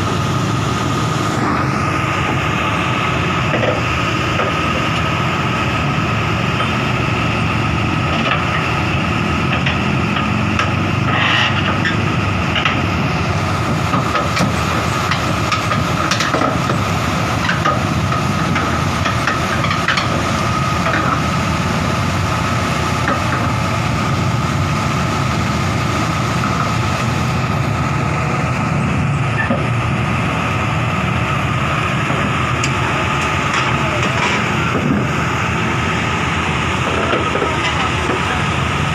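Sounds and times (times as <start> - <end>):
constant whine: 0.0 - 38.9
diesel engine running: 0.0 - 38.9.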